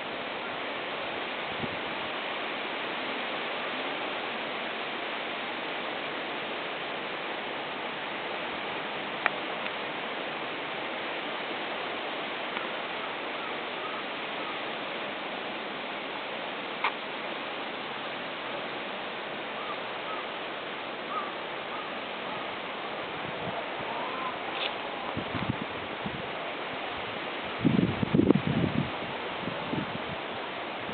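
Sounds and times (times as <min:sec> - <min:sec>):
strong wind rushing: 0:27.0 - 0:30.2.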